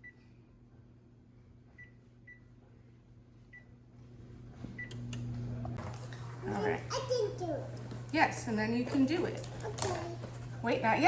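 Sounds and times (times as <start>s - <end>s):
appliance keypad beeps: 1.8s - 2.5s, 4.8s - 5.1s.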